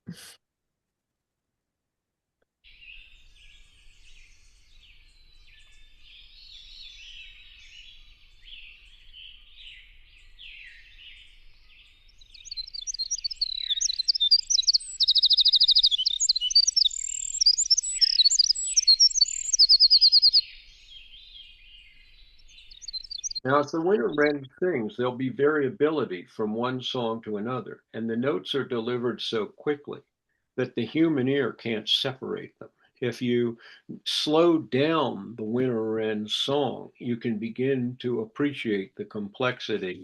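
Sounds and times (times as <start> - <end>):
bird song high notes: 2.7 - 24.6.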